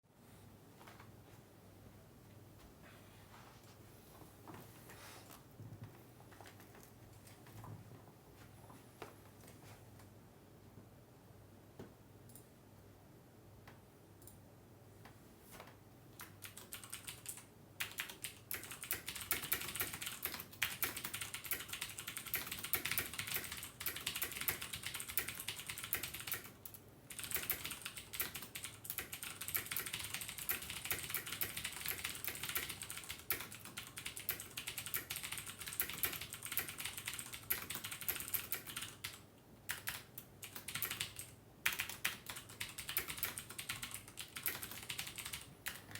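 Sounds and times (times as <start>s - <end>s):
fast keyboard typing: 16.2s - 45.9s.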